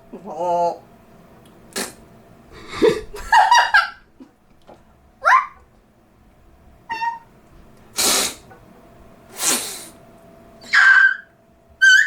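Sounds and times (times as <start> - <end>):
woman squeaking: 5.2 - 5.6, 6.9 - 7.3, 10.6 - 12.0
woman squeaky cry: 5.2 - 5.6, 6.9 - 7.3, 10.6 - 12.0.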